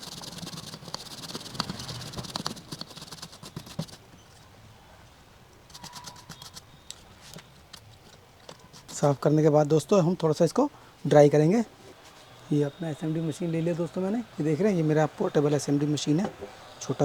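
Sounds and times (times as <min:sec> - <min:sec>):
brush scrubbing circuit board: 0:00.0 - 0:04.0, 0:05.7 - 0:06.7.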